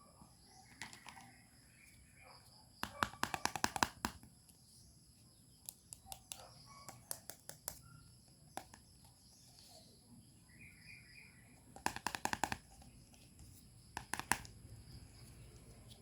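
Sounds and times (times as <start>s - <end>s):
toy pieces clicking and tapping: 2.8s - 4.2s, 11.7s - 12.8s, 14.0s - 14.7s.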